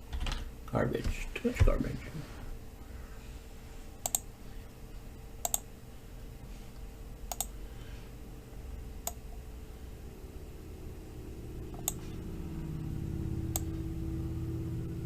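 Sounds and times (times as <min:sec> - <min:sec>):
faint steady hum: 0:00.0 - 0:15.0
computer mouse double-clicks: 0:04.0 - 0:04.2, 0:05.4 - 0:05.6, 0:07.3 - 0:07.5.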